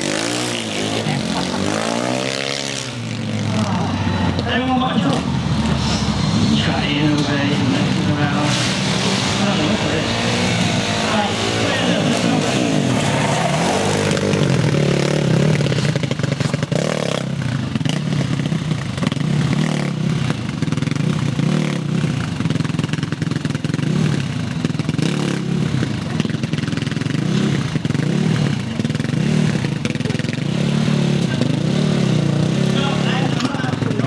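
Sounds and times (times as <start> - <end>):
quad bike engine revving: 0.0 - 34.0.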